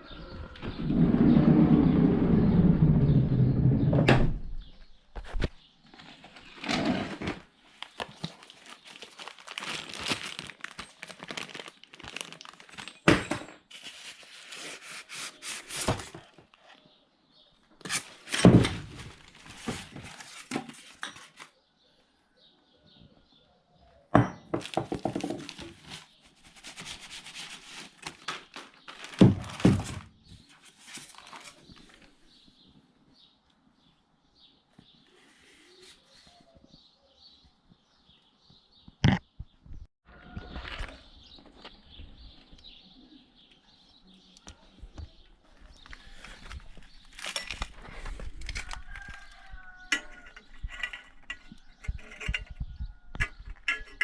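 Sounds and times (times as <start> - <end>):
knocks and thunks of handling: 12.8 - 13.8, 17.8 - 21.5, 24.1 - 25.9, 28.2 - 30.2.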